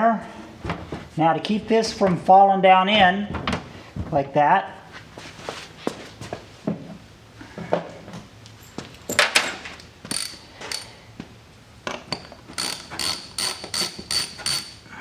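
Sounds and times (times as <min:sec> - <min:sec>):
hand tools clinking on metal: 0:08.6 - 0:11.0, 0:12.0 - 0:15.0.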